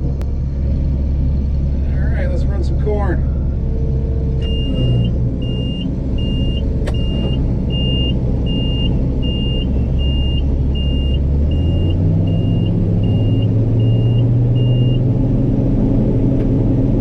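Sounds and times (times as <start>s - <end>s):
diesel engine running: 0.0s - 17.0s
backup alarm beeping: 4.4s - 15.0s.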